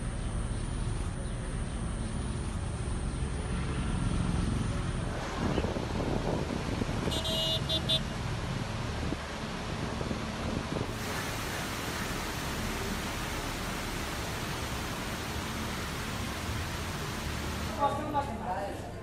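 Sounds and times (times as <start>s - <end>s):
low outdoor rumble: 8.1s - 19.0s.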